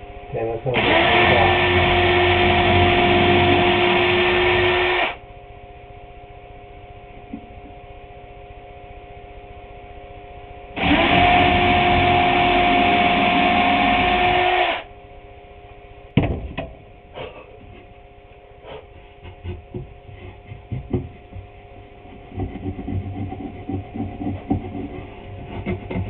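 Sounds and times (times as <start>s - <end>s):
low background hum: 0.0s - 26.0s
power tool motor running: 0.8s - 5.2s, 10.8s - 14.9s
sharp knocks: 16.2s - 16.8s.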